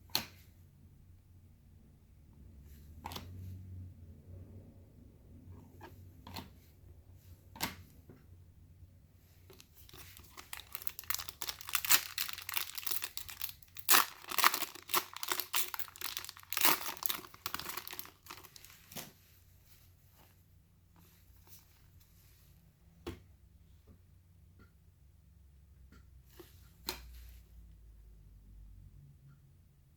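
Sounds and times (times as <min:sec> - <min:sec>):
dense crackling of wrapper: 0:09.5 - 0:18.9
wrapper tearing and crinkling: 0:09.5 - 0:19.0.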